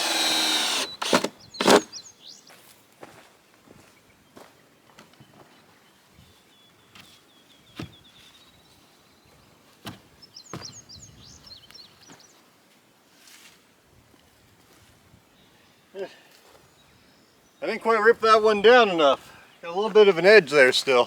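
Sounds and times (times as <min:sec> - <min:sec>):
small bird chirping: 0:00.1 - 0:02.6, 0:10.3 - 0:12.4.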